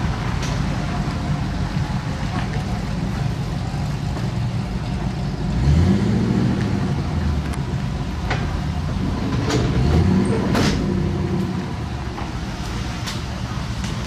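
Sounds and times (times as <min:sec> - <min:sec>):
vehicle engine revving: 0:05.2 - 0:13.1.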